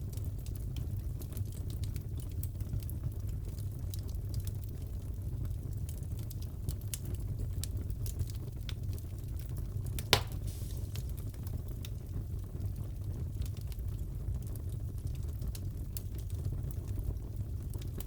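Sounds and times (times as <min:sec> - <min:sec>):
wood fire crackling: 0:00.0 - 0:18.0
fire popping: 0:05.7 - 0:18.0.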